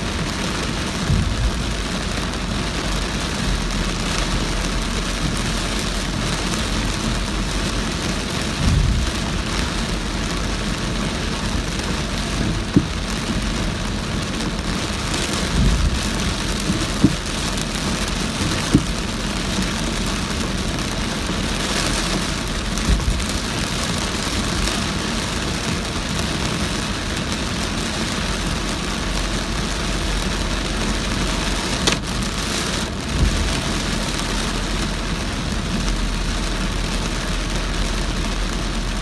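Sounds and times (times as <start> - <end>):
car road noise: 0.0 - 39.0
heavy rain on a car: 0.0 - 39.0
low knocks: 1.0 - 1.9, 8.6 - 9.4, 12.4 - 13.3, 15.6 - 17.4, 18.4 - 19.1.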